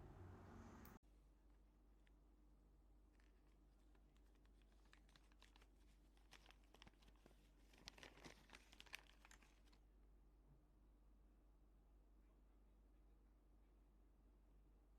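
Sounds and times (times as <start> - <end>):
faint clicks and crinkling: 3.0 - 9.9.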